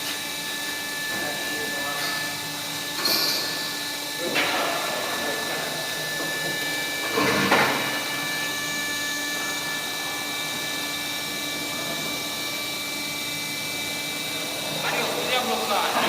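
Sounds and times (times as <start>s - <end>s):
band saw machine humming and whining: 0.0s - 16.0s.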